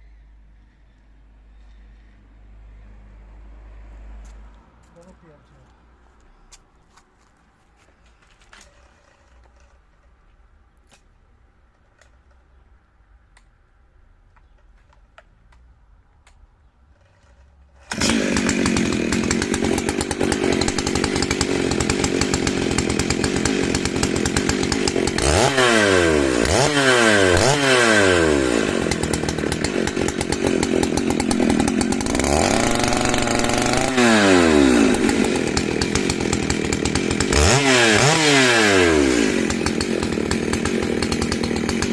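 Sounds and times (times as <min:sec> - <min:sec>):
chainsaw cutting wood: 0:08.4 - 0:10.0, 0:17.0 - 0:41.9.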